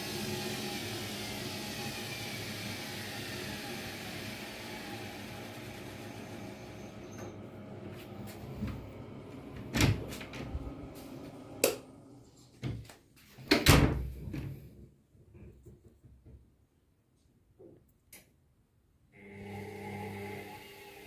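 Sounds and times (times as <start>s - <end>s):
washing machine spin winding down: 0.0s - 12.3s, 19.2s - 21.0s.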